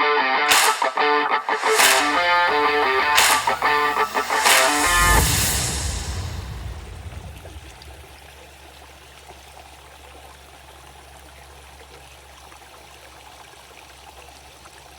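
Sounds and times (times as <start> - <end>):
music: 0.0 - 7.9.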